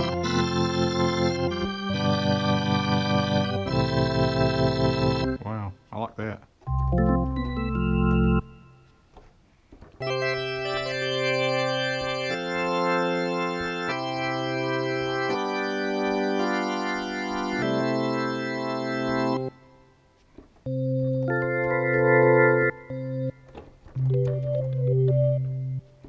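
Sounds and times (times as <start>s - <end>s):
keyboard organ chords: 0.0s - 9.1s, 10.0s - 20.0s, 20.6s - 26.0s.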